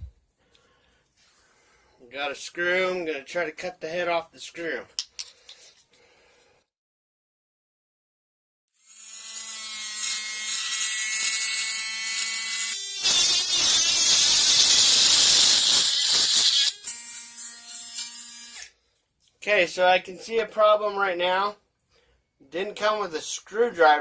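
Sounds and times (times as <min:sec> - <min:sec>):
rotary tool whining: 0:09.2 - 0:18.7
cutoff wheel grinding screw: 0:09.4 - 0:18.7.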